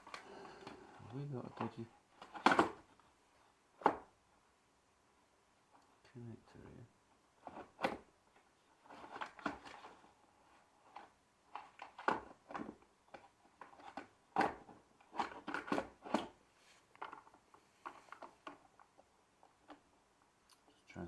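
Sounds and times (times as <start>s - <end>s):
clicks and knocks of handling wiring: 10.9s - 19.9s.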